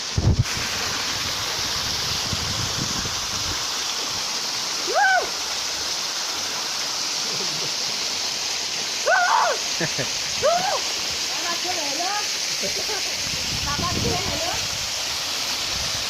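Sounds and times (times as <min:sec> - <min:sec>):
waterfall pouring: 0:00.0 - 0:16.0.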